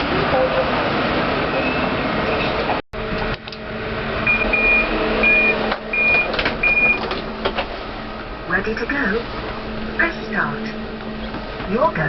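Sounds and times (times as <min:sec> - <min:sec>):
low steady hum: 0:03.0 - 0:12.0.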